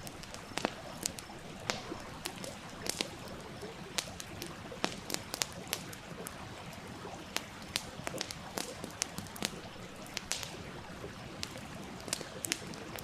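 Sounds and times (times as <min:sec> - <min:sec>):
campfire crackling and popping: 0:00.0 - 0:13.0.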